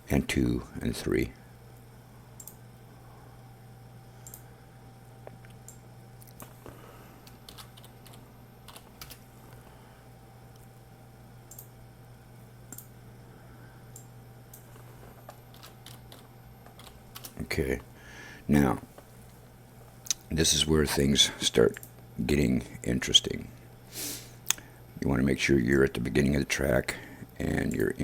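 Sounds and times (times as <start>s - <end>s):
low electrical hum: 0.0s - 28.0s
computer keyboard keystrokes: 7.2s - 9.2s, 15.3s - 17.4s.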